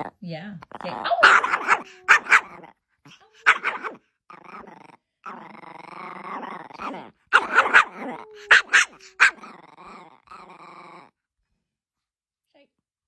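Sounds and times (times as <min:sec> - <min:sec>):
dog yelping: 0:00.8 - 0:04.0, 0:06.8 - 0:10.0
dog howl-like groan: 0:06.1 - 0:11.1.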